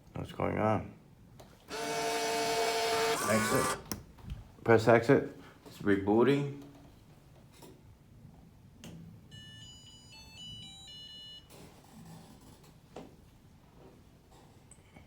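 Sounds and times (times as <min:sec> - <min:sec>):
vending machine beeping tune: 0:09.3 - 0:11.5.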